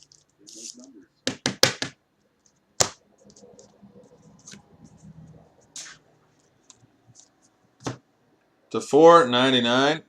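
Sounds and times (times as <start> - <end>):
cards rustling: 0.0 - 1.0
card sliding on card: 5.7 - 6.0.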